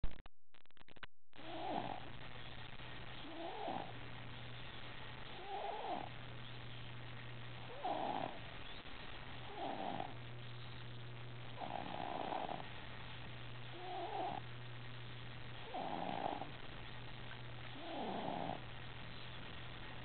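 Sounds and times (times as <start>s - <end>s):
baby snoring: 1.4s - 2.1s, 3.2s - 4.0s, 5.4s - 6.1s, 7.7s - 8.5s, 9.5s - 10.2s, 11.6s - 12.6s, 13.7s - 14.4s, 15.6s - 16.6s, 17.7s - 18.6s.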